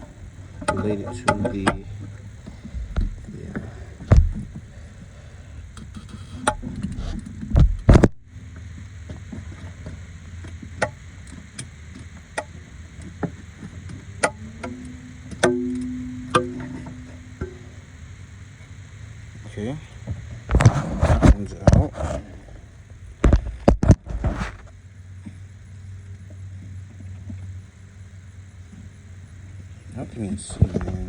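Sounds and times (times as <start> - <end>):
heavy thumps: 0.0 - 5.7, 6.4 - 8.2, 14.2 - 18.0
low hum: 0.0 - 31.0
sharp metallic ticks: 10.4 - 18.9.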